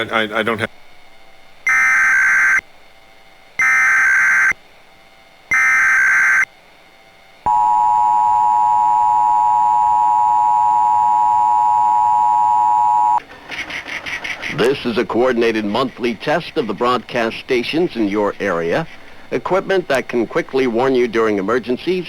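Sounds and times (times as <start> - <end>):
harsh buzzy digital data bursts: 1.7 - 2.6, 3.6 - 4.6, 5.5 - 6.5
two-tone alert signal: 5.5 - 6.4.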